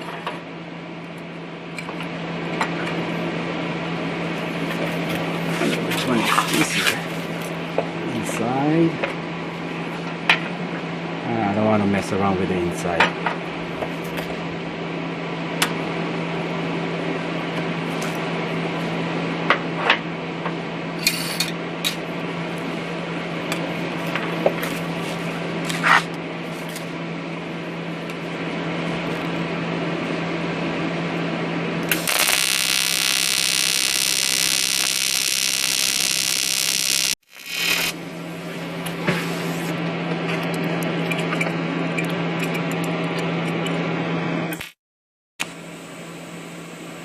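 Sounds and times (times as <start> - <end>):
steady machine hum: 29.4 - 39.0
welding arc buzzing hiss: 31.9 - 38.6.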